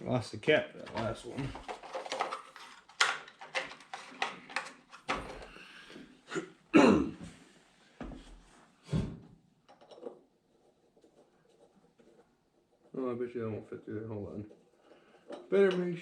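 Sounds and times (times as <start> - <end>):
tools knocking and clattering: 0.8 - 5.6, 9.6 - 10.3, 14.5 - 16.0.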